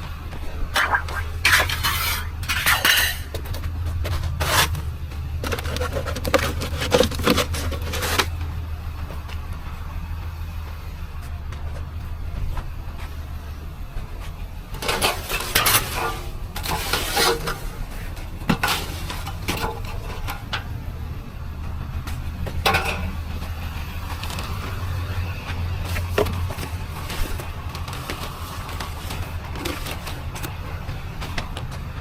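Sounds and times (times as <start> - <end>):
engine humming: 0.0 - 32.0
hard objects clattering: 0.6 - 8.5.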